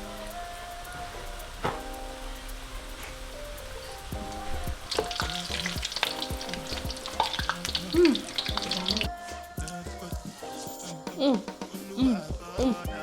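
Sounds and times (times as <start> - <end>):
batter sizzling in hot oil: 0.0 - 9.8
utensil clicking in pan: 4.8 - 9.1.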